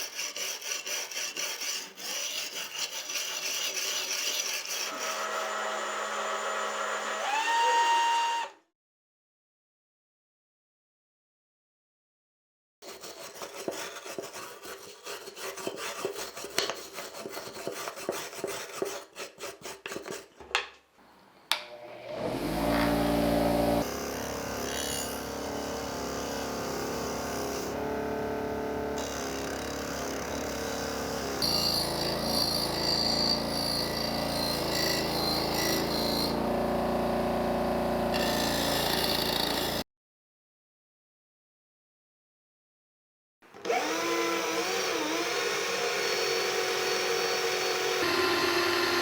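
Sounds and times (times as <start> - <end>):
hand tool rubbing and scraping: 0.0 - 5.3, 12.8 - 20.5
power tool running: 4.9 - 8.5, 21.5 - 39.8, 43.6 - 49.0.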